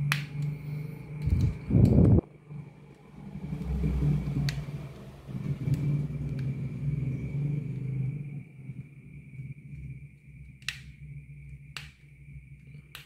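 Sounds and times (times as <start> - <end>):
faint high whine: 0.0 - 13.0
screwdriver scraping and rumbling: 1.2 - 2.1
sharp clicks: 1.2 - 2.2.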